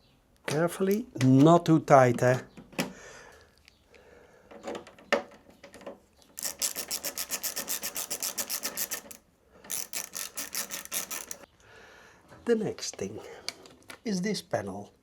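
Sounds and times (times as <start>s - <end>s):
hand ratchet clicking rapidly: 6.4s - 11.5s.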